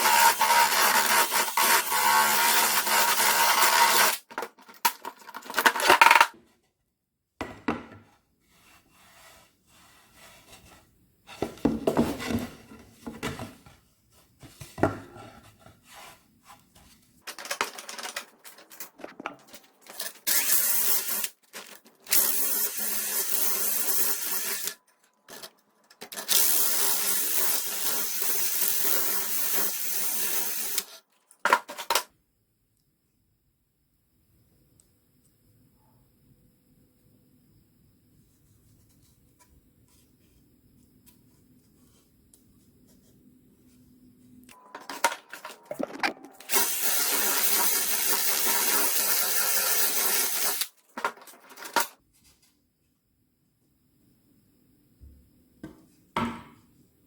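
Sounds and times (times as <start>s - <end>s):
knocks and rubbing of parts: 44.8s - 46.6s.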